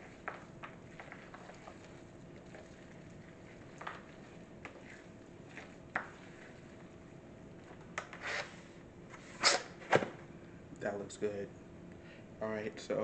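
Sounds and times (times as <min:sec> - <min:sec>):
faint steady hum: 0:00.0 - 0:13.0
brief loud scrape: 0:08.2 - 0:08.6, 0:09.3 - 0:09.7.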